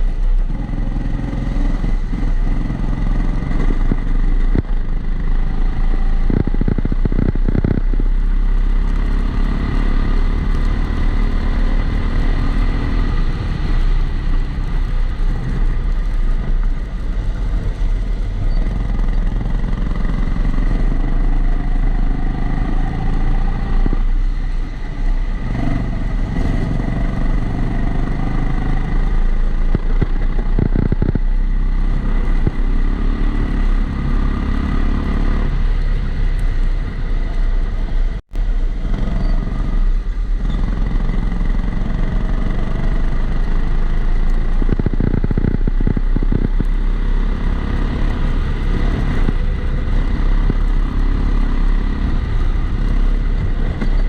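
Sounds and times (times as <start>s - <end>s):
kart engine running: 40.6s - 54.0s.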